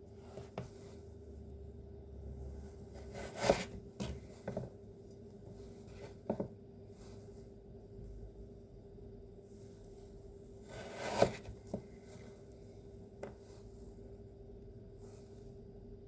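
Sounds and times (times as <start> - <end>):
faint steady hum: 0.0 - 16.0
knife cutting carrot on board: 2.9 - 4.7, 10.7 - 12.0.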